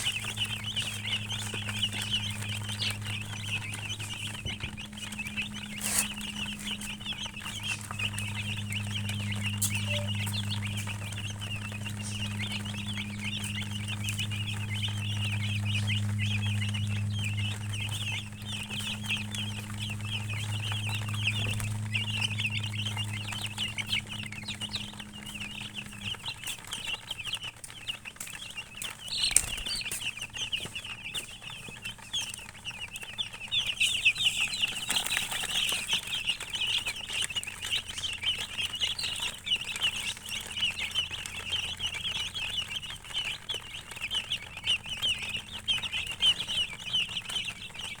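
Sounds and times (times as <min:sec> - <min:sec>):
low hum: 0:00.0 - 0:26.8
chicks peeping: 0:00.0 - 0:48.0.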